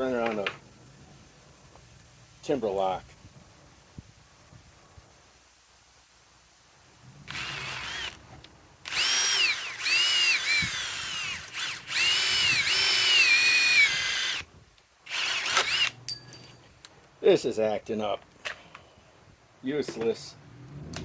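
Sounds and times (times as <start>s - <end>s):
impact driver motor whine: 7.3s - 8.2s, 8.9s - 14.5s, 15.1s - 16.0s.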